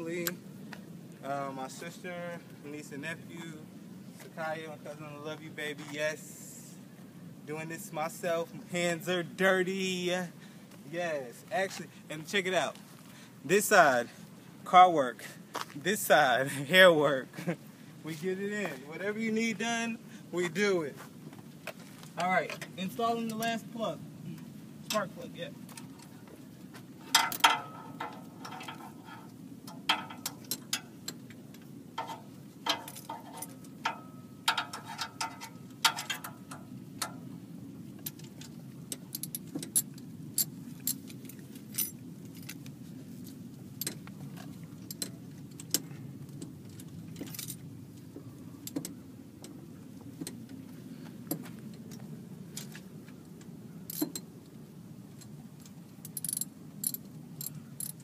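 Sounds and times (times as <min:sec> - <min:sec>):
metal tools clinking: 0:27.0 - 0:31.2, 0:32.0 - 0:37.2.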